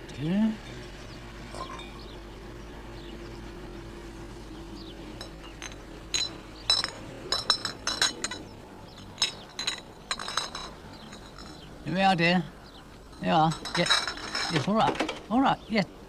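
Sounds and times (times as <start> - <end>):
glass dish clinking: 1.5 - 2.0, 5.2 - 11.7, 13.1 - 14.7.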